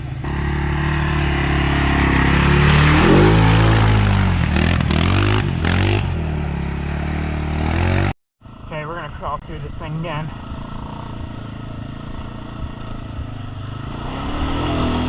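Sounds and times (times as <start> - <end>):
single-cylinder engine running: 0.0 - 8.1.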